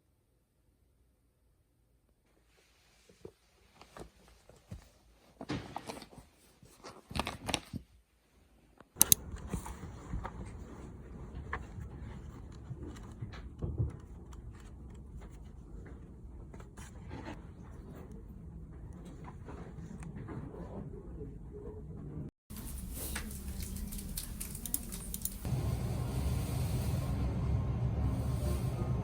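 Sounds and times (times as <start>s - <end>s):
rustling of things handled: 2.5s - 8.0s, 22.5s - 25.6s
sharp click: 9.0s - 9.2s.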